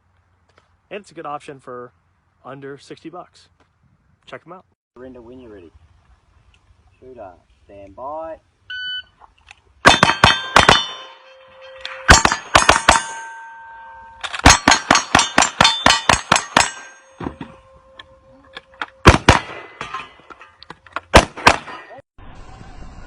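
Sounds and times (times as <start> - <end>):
rapid pistol shots: 9.8 - 11.0, 19.0 - 19.7, 21.1 - 21.8
steel targets clanging: 9.8 - 22.0.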